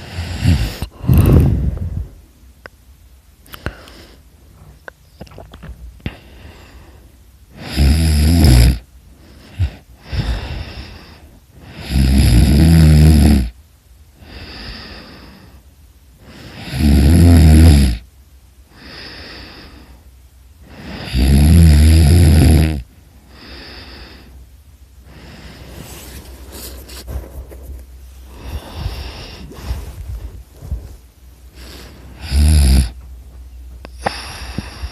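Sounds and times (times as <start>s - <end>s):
person snoring loudly: 0.0s - 1.9s, 7.5s - 8.8s, 11.6s - 13.6s, 16.3s - 18.0s, 20.7s - 24.3s, 28.3s - 30.0s, 31.6s - 33.0s
quiet breaths: 0.0s - 34.9s.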